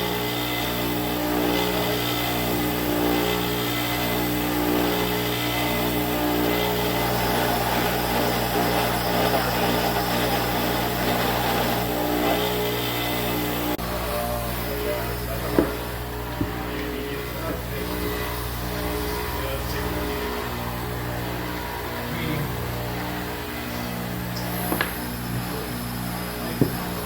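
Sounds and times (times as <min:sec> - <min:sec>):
electric grinder running: 0:00.0 - 0:27.0.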